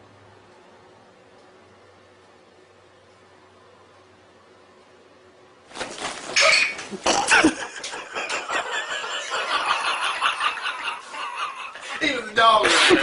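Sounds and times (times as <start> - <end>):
people laughing: 6.9 - 13.0.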